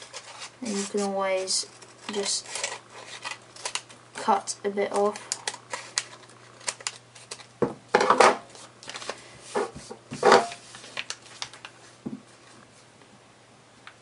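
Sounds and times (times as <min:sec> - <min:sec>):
paper rustling and crinkling: 0:00.0 - 0:03.9, 0:04.9 - 0:07.5, 0:08.5 - 0:12.6.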